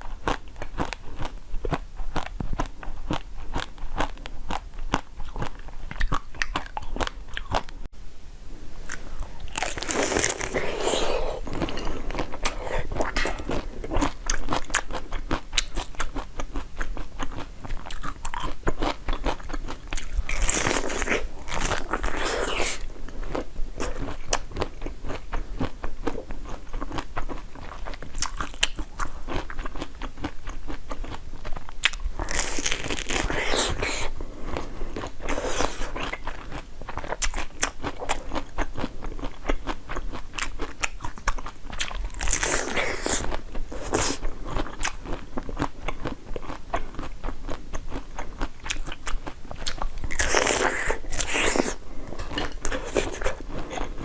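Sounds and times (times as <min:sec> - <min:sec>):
person chewing crunchy food: 0:00.0 - 0:07.9, 0:08.8 - 0:54.0.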